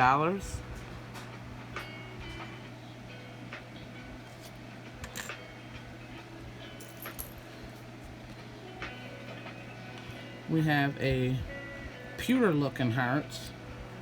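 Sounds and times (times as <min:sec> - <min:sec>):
steady low hum: 0:00.0 - 0:14.0
jewelry clicking and clinking: 0:05.0 - 0:05.4, 0:06.8 - 0:07.5.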